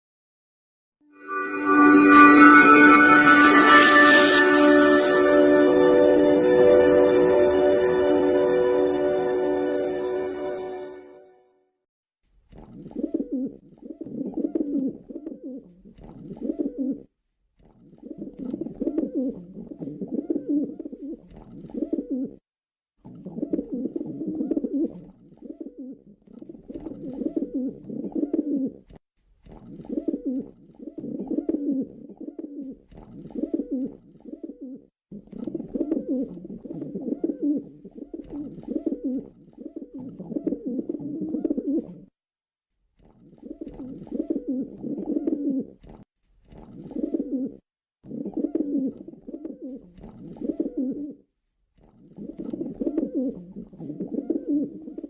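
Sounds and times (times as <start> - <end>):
pigeons cooing: 30.9 - 32.8, 35.5 - 42.0, 46.9 - 51.2, 52.1 - 55.0.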